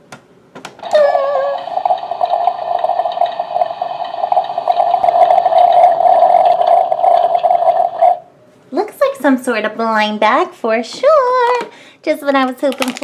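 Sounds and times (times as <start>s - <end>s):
coffee maker pump hum: 0.8s - 8.2s
water gurgling and bubbling: 0.8s - 8.2s.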